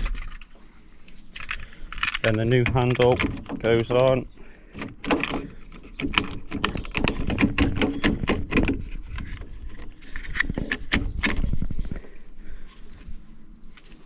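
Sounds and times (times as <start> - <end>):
door handle clicks and rattles: 1.4 - 8.8.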